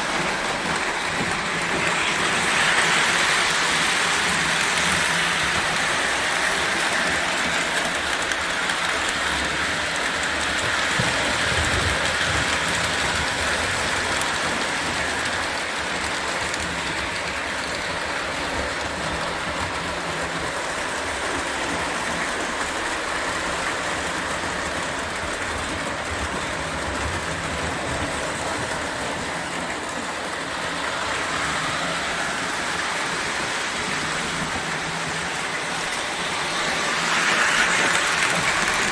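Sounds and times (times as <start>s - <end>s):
toy electric train whirring: 0.0s - 38.9s.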